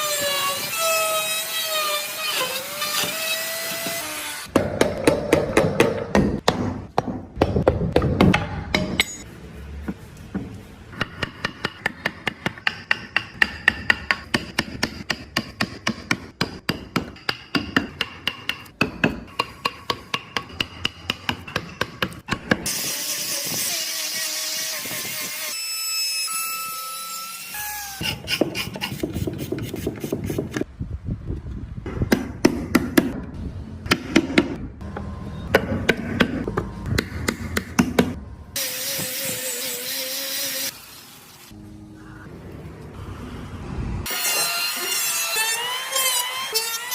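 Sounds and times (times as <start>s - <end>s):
knocking and scraping: 28.2s - 30.7s.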